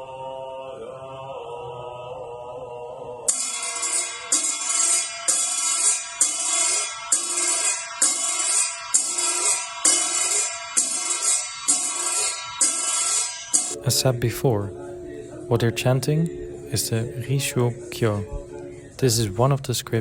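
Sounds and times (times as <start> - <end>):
metal cymbal-like percussion: 3.3 - 14.0.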